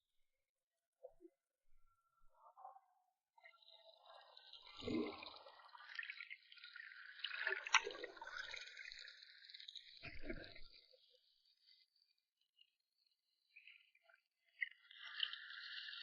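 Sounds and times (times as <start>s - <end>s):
water gurgling and splashing: 3.7s - 11.0s.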